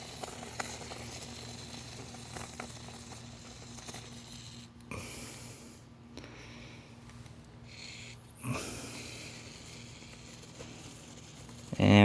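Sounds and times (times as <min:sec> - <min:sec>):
aerosol foam can spraying: 0:00.0 - 0:04.7, 0:07.7 - 0:12.0.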